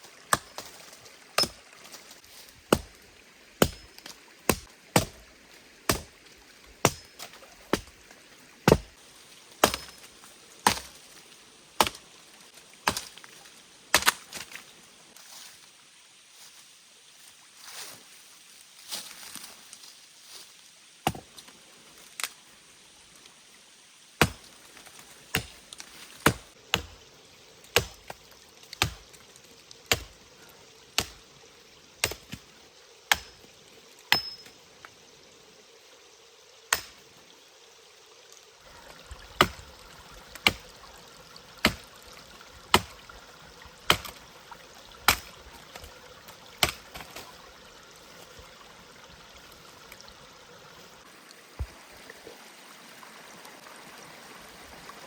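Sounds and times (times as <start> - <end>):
stream running: 0.0 - 55.0
axe chopping wood: 2.7 - 3.0, 3.6 - 3.9, 4.5 - 5.2, 5.9 - 6.1, 6.8 - 7.9, 8.6 - 9.0, 9.6 - 10.0, 10.6 - 11.0, 11.8 - 12.0, 12.8 - 13.1, 13.9 - 14.4, 21.0 - 21.3, 24.2 - 24.5, 25.3 - 25.6, 26.2 - 27.0, 27.8 - 28.2, 28.8 - 29.1, 29.9 - 30.2, 31.0 - 31.2, 32.0 - 32.4, 33.1 - 33.4, 34.1 - 34.5, 36.7 - 37.0, 39.4 - 39.6, 41.6 - 41.8, 42.7 - 43.0, 43.8 - 44.2, 45.0 - 45.4, 46.6 - 47.2.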